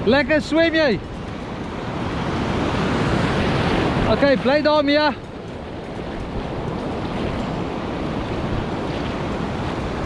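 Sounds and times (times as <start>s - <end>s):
sea surf washing ashore: 0.0s - 10.0s.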